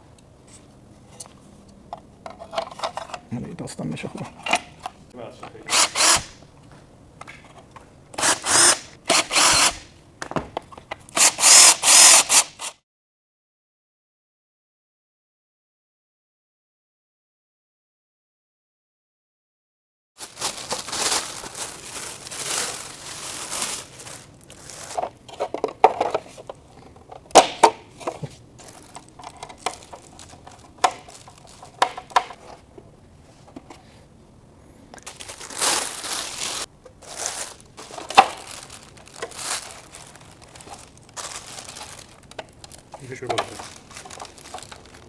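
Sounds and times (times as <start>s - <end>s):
crinkling rustling handling noise: 0.3s - 9.9s, 20.2s - 45.0s.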